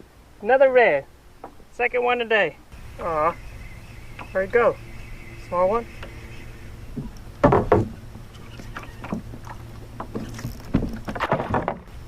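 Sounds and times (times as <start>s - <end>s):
steady low rumble: 2.6s - 8.6s
knocks against plastic kayak hull: 7.0s - 8.0s.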